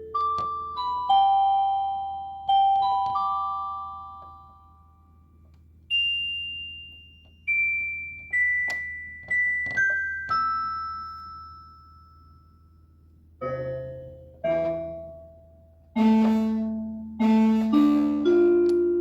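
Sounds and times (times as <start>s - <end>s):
bell-like keyboard notes: 0.0s - 5.1s, 5.9s - 19.0s
low keyboard chord: 13.4s - 19.0s.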